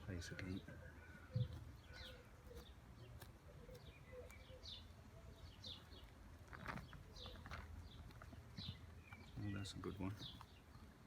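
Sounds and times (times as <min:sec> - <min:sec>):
faint bird chirps: 0:00.7 - 0:06.1.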